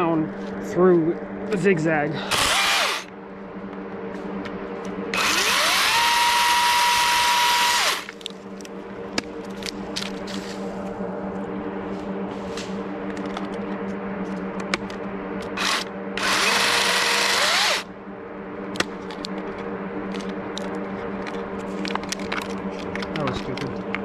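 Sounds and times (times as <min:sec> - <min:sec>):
low hum: 0:00.0 - 0:24.0
chainsaw cutting wood: 0:02.3 - 0:03.1, 0:05.2 - 0:08.2, 0:15.6 - 0:17.9.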